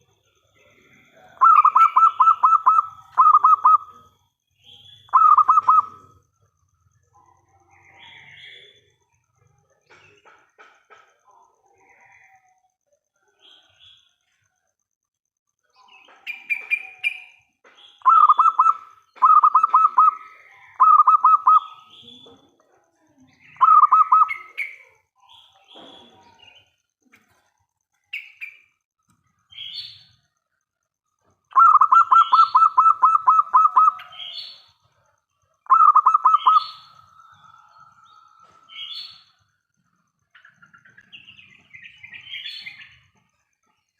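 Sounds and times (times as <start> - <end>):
dove cooing: 0.7 - 4.1, 5.1 - 6.2, 18.0 - 21.8, 23.6 - 24.9, 31.5 - 34.6, 35.6 - 39.1.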